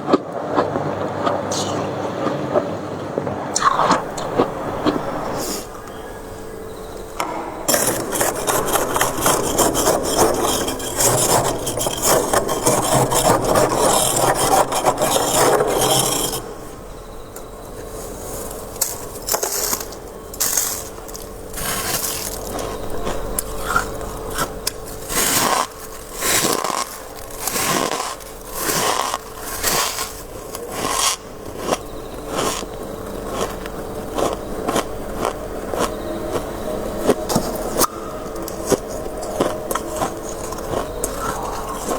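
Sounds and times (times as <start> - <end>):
frost scraping: 3.6 - 16.9, 17.8 - 34.4.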